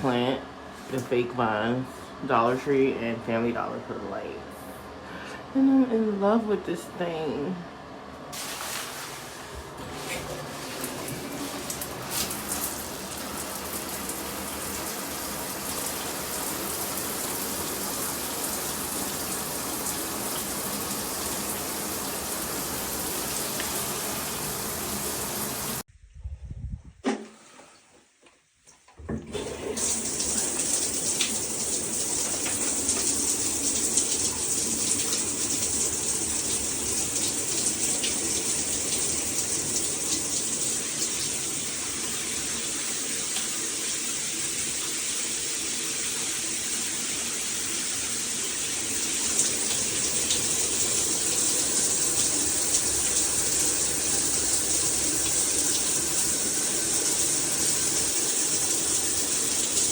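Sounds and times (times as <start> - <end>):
water spraying from shower head: 8.4 - 25.8, 29.4 - 44.2.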